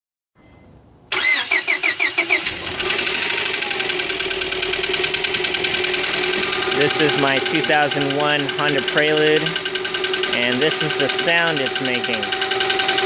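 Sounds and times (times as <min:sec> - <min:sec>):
starter cranking engine: 0:01.1 - 0:13.0
engine running with fast knock: 0:02.6 - 0:13.0.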